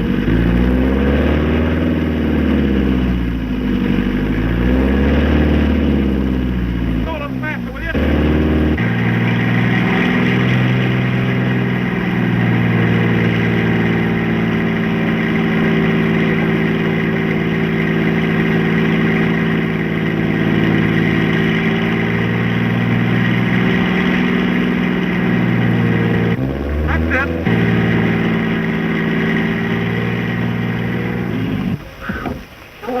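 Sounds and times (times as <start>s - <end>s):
vehicle engine droning: 0.0s - 33.0s.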